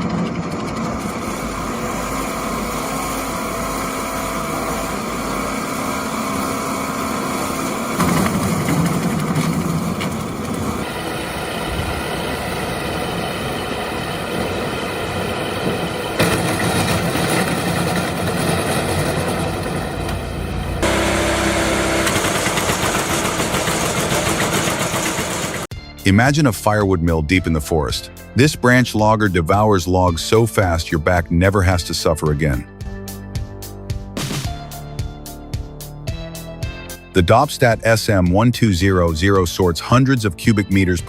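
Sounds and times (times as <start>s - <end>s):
wood-processing machinery running: 0.0s - 25.7s.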